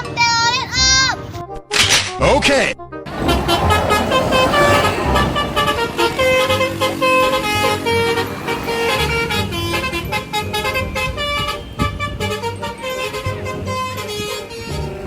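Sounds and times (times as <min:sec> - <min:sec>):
bus musical horn melody: 0:03.1 - 0:15.0.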